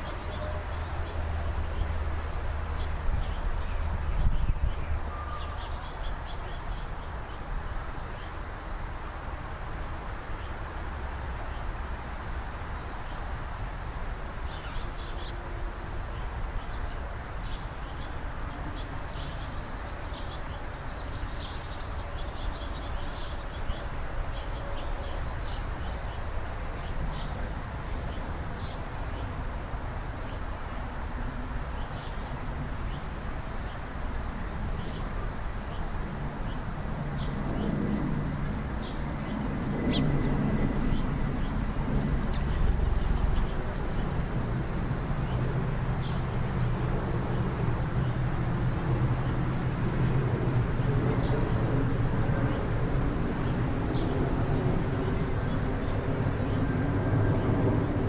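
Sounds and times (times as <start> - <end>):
small birds chirping: 38.7 - 44.4.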